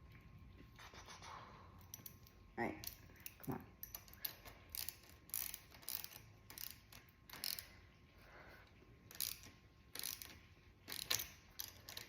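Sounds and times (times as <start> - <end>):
metallic clicks and scrapes: 1.8 - 7.8, 9.1 - 12.0.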